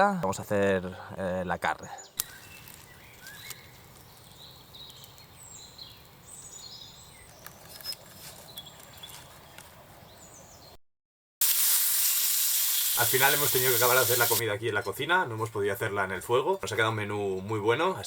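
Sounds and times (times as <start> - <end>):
bird chirps and calls: 1.9 - 7.4.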